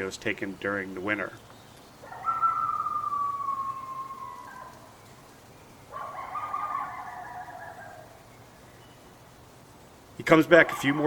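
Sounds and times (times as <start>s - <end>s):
coyote howling: 2.0s - 5.0s, 5.8s - 8.3s, 10.5s - 11.0s.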